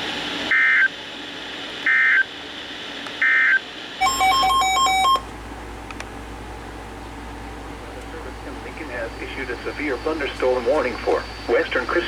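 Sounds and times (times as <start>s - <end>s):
rapid touch-tone beeps: 3.4s - 5.2s, 9.0s - 12.0s
faint low hum: 4.0s - 12.0s
digital data bursts: 9.1s - 12.0s.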